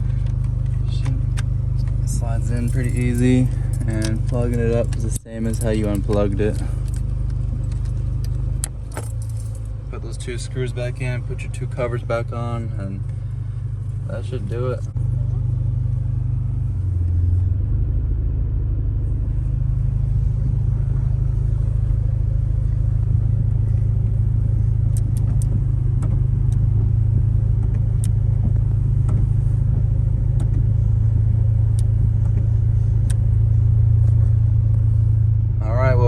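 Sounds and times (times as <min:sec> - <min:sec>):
car engine running: 0:00.0 - 0:36.0.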